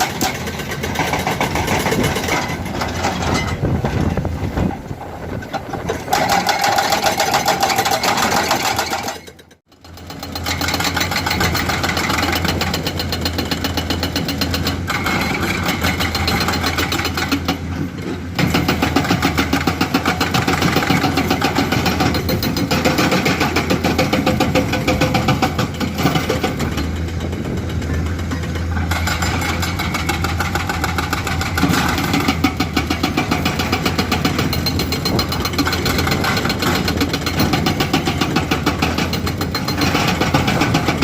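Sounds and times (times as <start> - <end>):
hydraulic breaker hammering rock: 0.0 - 4.7, 5.7 - 41.0
diesel engine running: 9.7 - 41.0.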